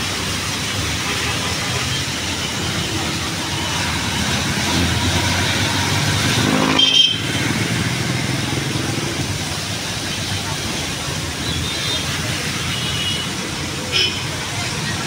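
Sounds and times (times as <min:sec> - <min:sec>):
vehicle engines running: 0:00.0 - 0:15.0
vehicle passing close: 0:03.1 - 0:10.0.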